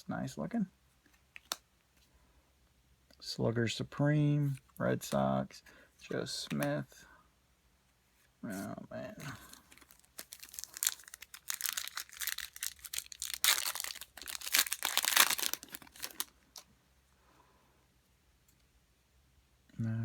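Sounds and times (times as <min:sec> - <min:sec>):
foil wrapper tearing and crinkling: 0:09.4 - 0:16.6.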